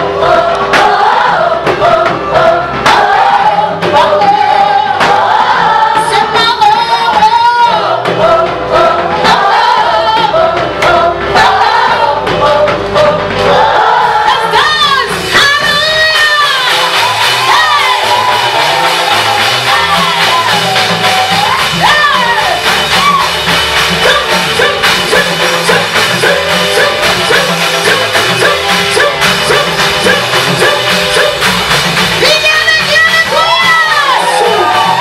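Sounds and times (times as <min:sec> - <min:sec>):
choir singing with a band: 0:00.0 - 0:32.3, 0:33.3 - 0:35.0
drum beat: 0:00.0 - 0:35.0.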